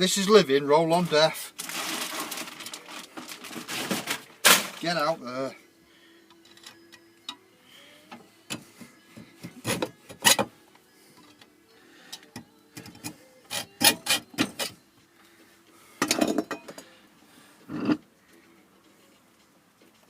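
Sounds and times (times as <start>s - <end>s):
scraping and rubbing: 1.6s - 4.4s.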